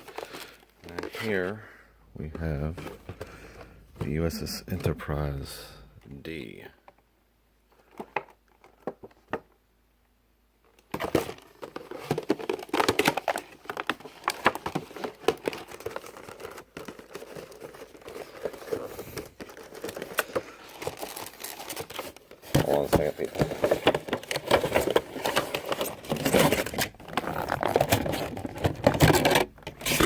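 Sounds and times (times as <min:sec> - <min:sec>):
packaging crinkling: 0:11.0 - 0:30.0.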